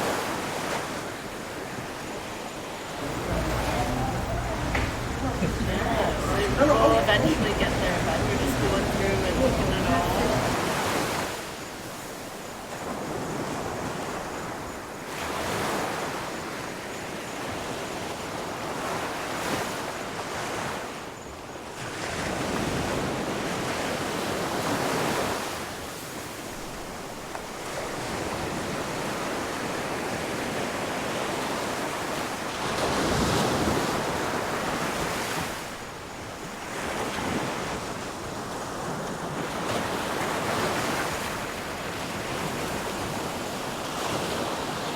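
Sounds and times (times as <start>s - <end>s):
ocean waves breaking: 3.0s - 11.0s.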